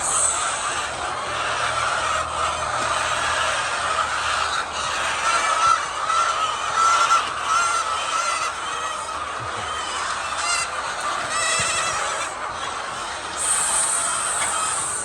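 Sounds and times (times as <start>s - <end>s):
hiss: 0.0s - 0.8s, 13.4s - 15.0s
hen cackles: 0.0s - 15.0s
hens clucking: 0.0s - 15.0s.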